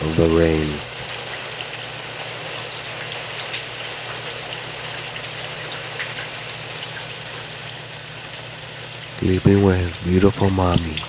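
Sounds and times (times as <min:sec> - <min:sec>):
rain hiss from sound machine: 0:00.0 - 0:11.0
low steady hum: 0:05.6 - 0:11.0.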